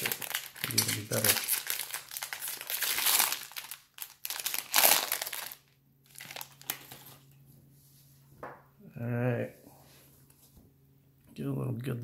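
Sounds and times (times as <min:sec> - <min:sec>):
card pack wrapper crinkling: 0:00.0 - 0:07.2.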